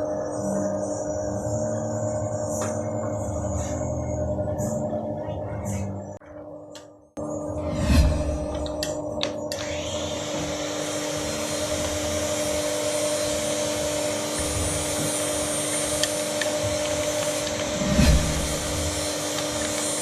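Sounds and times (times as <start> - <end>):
machine motor humming: 7.2 - 20.0.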